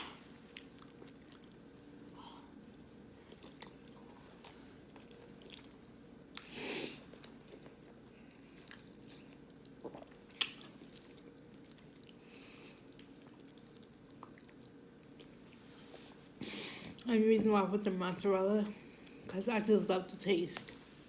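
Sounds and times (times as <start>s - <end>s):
person chewing food: 0.0s - 2.4s, 3.0s - 16.2s.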